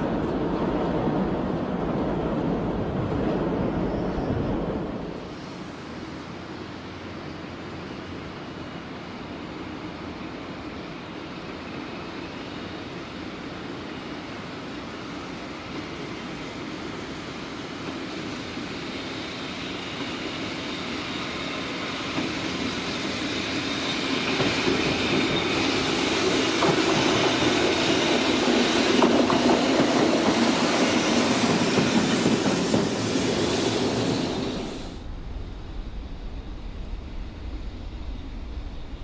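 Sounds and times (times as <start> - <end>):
electric freight train passing: 0.0 - 39.0
faint high wheel squeal: 19.0 - 29.0
wheels clacking over rail joints: 24.0 - 34.1.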